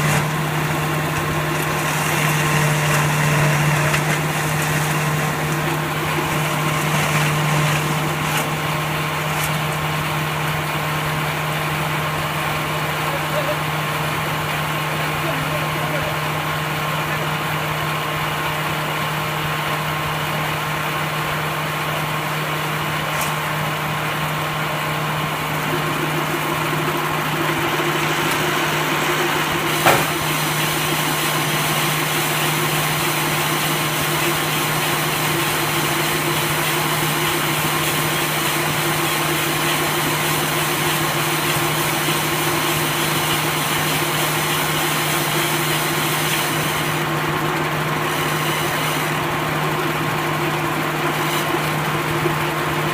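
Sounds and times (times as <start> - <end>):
baler machine humming: 0.0 - 52.9
sharp knock: 29.8 - 30.2.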